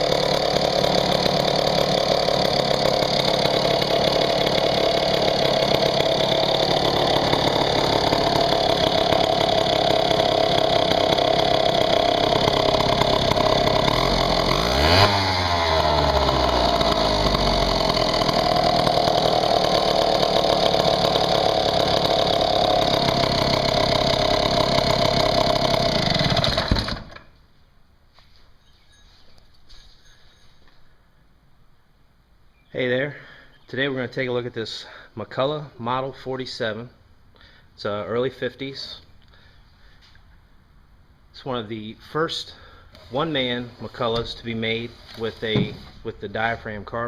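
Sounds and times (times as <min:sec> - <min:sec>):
chainsaw engine running: 0:00.0 - 0:27.3, 0:42.5 - 0:47.0.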